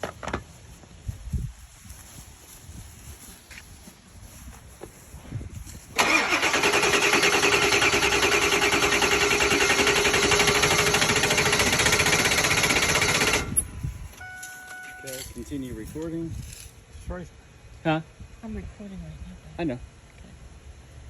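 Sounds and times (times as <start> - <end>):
starter cranking engine: 6.0 - 13.8.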